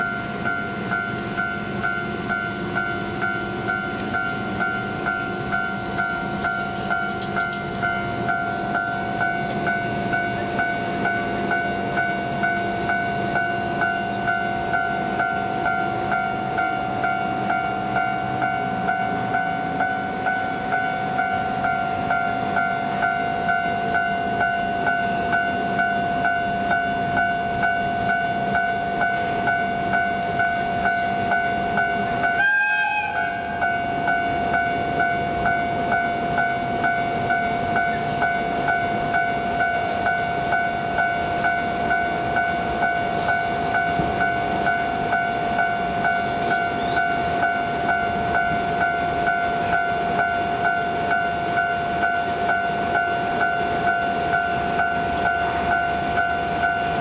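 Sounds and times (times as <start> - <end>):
train rumbling: 0.0 - 57.0
level crossing bell ringing: 7.8 - 32.7
train horn blast: 31.6 - 33.9.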